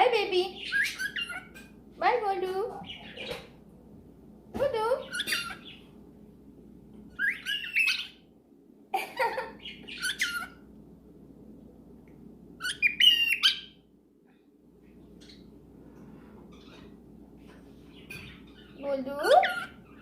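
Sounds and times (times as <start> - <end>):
cockatiel chirping and squawking: 0.6 - 1.6, 5.0 - 5.8, 7.2 - 8.2, 9.6 - 10.6, 12.6 - 13.8, 18.0 - 20.0.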